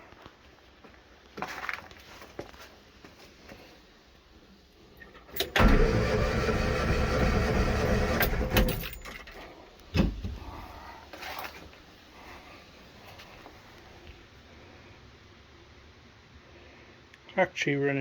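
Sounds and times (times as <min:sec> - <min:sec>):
engine cranking on starter motor: 0:05.3 - 0:09.4.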